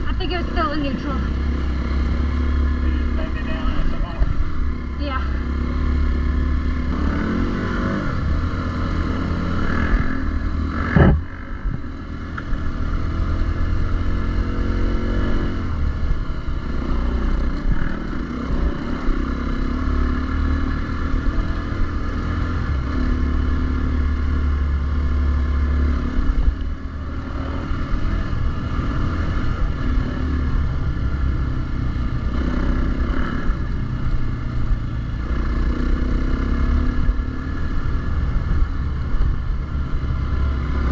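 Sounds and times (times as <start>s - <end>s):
dirt bike engine revving: 0.0s - 11.8s
wind rumble on microphone: 6.8s - 18.9s.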